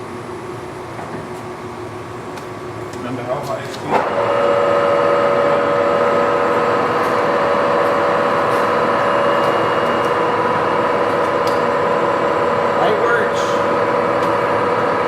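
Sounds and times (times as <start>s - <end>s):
lathe whining: 3.9s - 15.0s.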